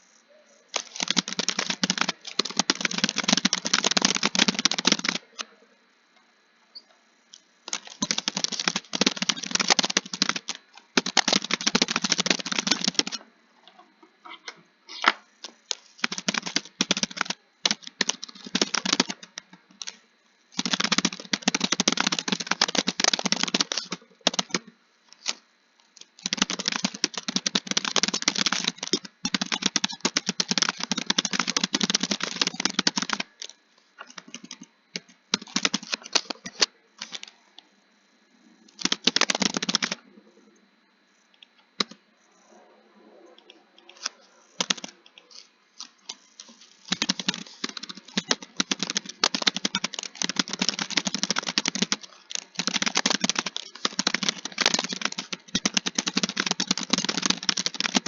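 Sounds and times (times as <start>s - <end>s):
keyboard typing: 0.7s - 5.5s, 7.7s - 13.2s, 15.4s - 25.4s, 26.0s - 37.3s, 38.7s - 40.0s, 43.4s - 58.0s.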